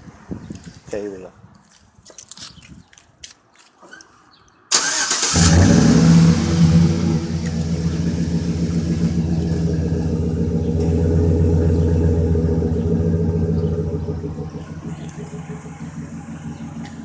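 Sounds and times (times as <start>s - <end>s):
truck engine starting and idling: 4.7s - 17.0s
starter motor cranking: 4.8s - 10.0s.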